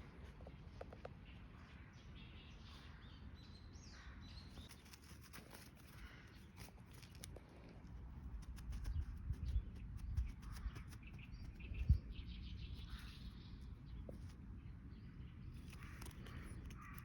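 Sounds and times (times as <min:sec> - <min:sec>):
faint bird chirps: 0:08.4 - 0:17.0.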